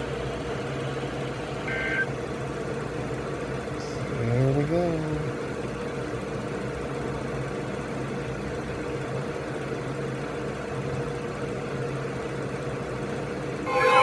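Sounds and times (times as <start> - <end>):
faint high tone: 13.7 - 14.0.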